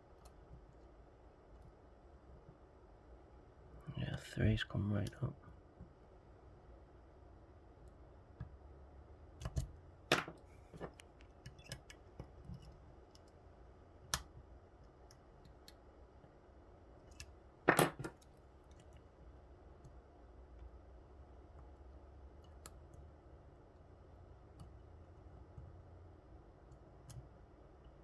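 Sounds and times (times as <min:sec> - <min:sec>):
lock pick clicking and scraping: 0:10.3 - 0:13.4.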